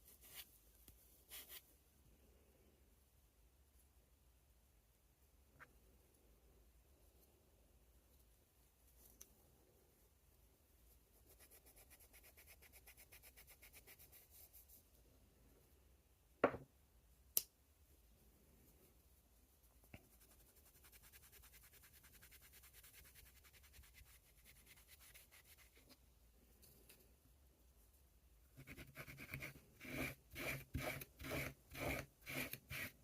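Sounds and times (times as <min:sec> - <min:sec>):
fast rubbing strokes on knife: 0:20.1 - 0:25.8, 0:28.6 - 0:33.0.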